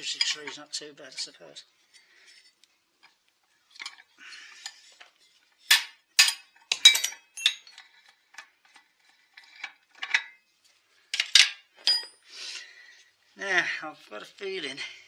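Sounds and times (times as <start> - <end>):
metal tools clinking: 0.0 - 2.4, 5.6 - 10.4, 11.1 - 12.2.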